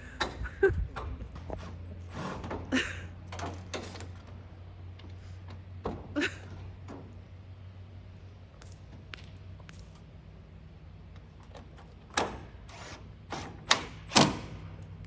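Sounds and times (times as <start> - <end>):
irregular knocks and thuds: 5.8 - 7.2.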